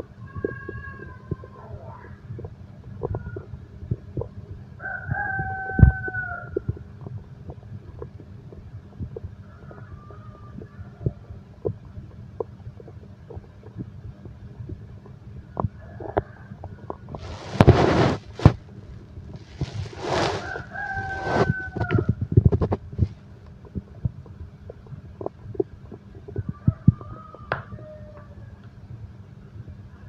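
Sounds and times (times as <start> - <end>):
stomach growling: 0.0 - 28.4
squeaky stomach tones: 0.2 - 4.3.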